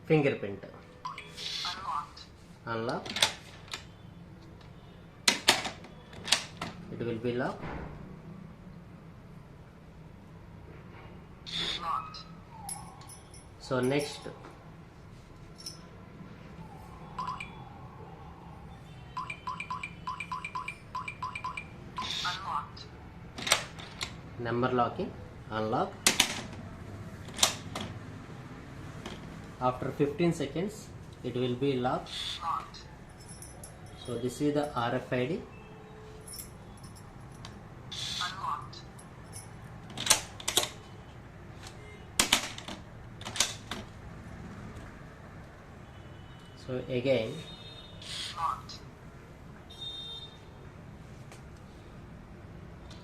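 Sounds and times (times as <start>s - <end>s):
keypad beeps: 17.2s - 17.6s, 19.2s - 22.1s.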